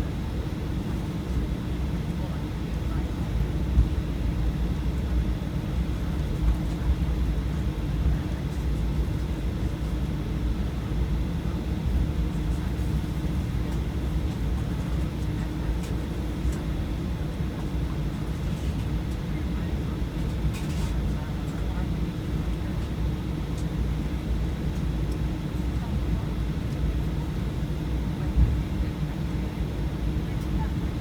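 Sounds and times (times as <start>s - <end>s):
aircraft cabin engine rumble: 0.0s - 31.0s.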